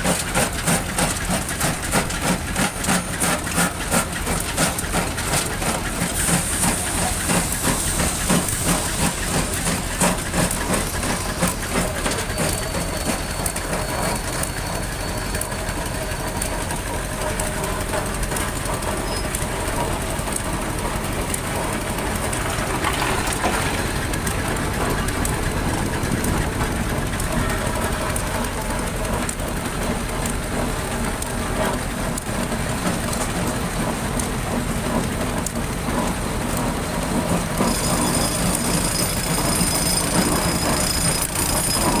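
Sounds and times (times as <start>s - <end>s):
engine running with rattling clatter: 0.0s - 42.0s.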